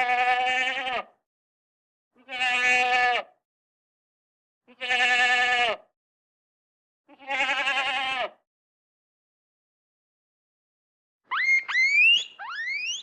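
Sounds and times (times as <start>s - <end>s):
goat bleating: 0.0s - 1.1s, 2.2s - 3.3s, 4.7s - 5.8s, 7.1s - 8.4s.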